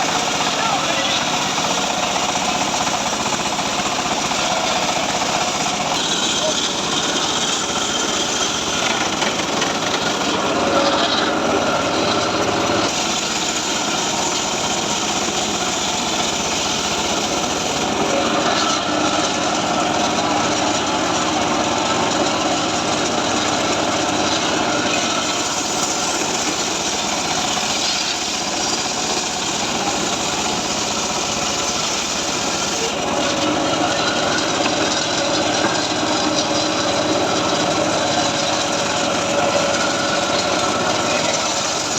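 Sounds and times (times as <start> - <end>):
circular saw cutting wood: 0.0 - 41.9.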